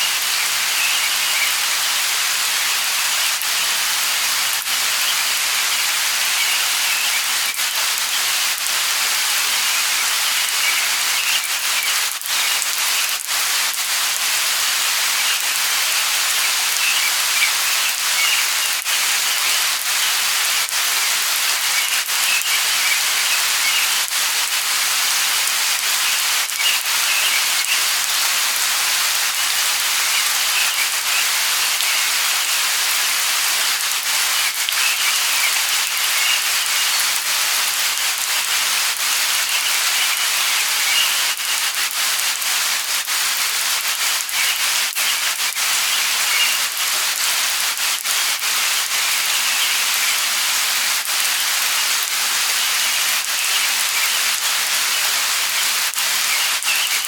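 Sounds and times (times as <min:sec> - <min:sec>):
bird chirps: 0:00.0 - 0:02.0, 0:04.9 - 0:08.5, 0:09.6 - 0:13.1, 0:15.2 - 0:20.3, 0:21.0 - 0:24.0, 0:25.8 - 0:28.0, 0:29.4 - 0:33.2, 0:34.2 - 0:37.2, 0:39.1 - 0:41.6, 0:44.2 - 0:46.7, 0:49.0 - 0:50.3, 0:51.7 - 0:54.3, 0:54.9 - 0:57.0
light rain falling: 0:00.0 - 0:57.0.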